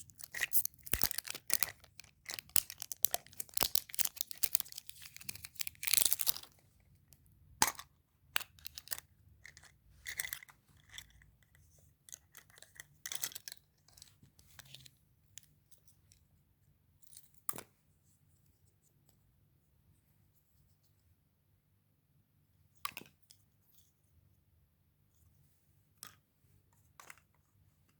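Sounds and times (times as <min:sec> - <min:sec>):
candy packaging crinkling and tearing: 0:00.0 - 0:06.6.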